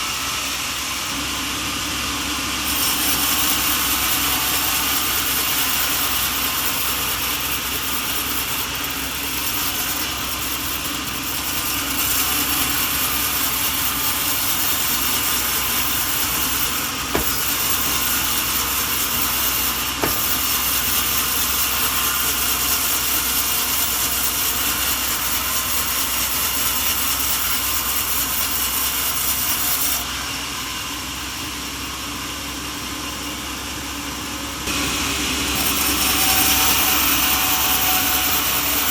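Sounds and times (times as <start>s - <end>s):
saw cutting through wood: 0.0s - 38.9s
sawmill machinery running: 0.0s - 38.9s.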